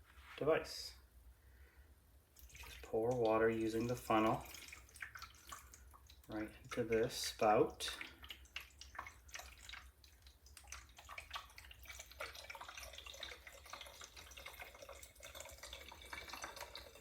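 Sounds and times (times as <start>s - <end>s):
water trickling and dripping: 2.4s - 17.0s.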